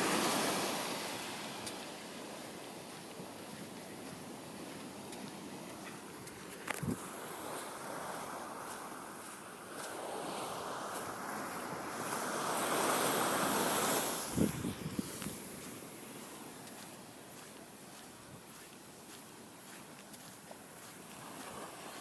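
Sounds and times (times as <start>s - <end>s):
ocean surf breaking: 0.0s - 3.6s, 9.8s - 16.6s
wind on microphone: 6.8s - 7.1s, 13.5s - 15.7s.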